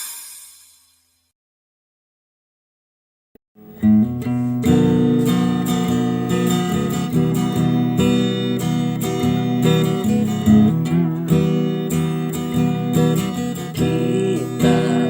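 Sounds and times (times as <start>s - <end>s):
strummed guitar song: 3.6s - 15.0s.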